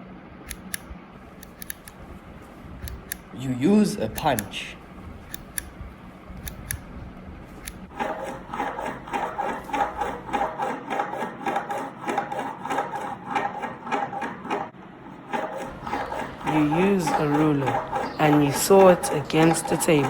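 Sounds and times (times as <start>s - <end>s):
sharp clicks: 0.4s - 2.0s, 2.8s - 3.4s, 4.0s - 5.8s, 6.4s - 6.9s, 7.6s - 7.9s
plastic ruler rasping on table: 7.9s - 20.0s.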